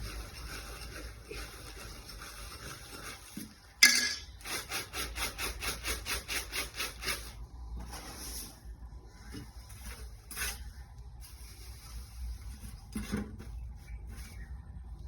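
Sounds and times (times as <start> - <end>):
dried peas stirred in a pan: 0.0 - 3.4.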